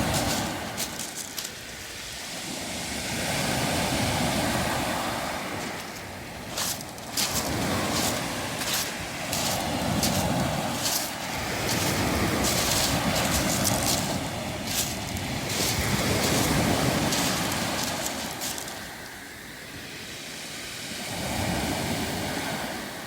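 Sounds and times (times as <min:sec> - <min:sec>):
footsteps on pebbles: 0:00.0 - 0:01.8, 0:05.6 - 0:19.1
waves washing over pebbles: 0:00.0 - 0:23.0.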